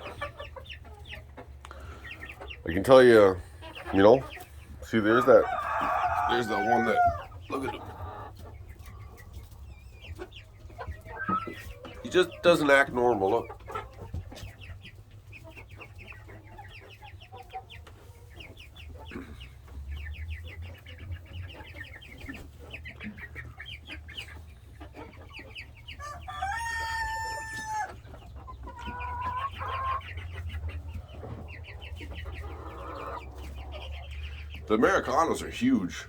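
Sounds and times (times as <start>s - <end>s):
chickens clucking: 0.0s - 36.0s
rooster crowing: 5.4s - 7.2s, 26.0s - 27.9s.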